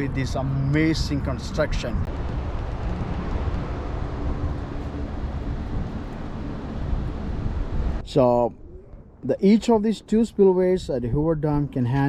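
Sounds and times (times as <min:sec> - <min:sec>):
low rumble: 0:00.9 - 0:09.3.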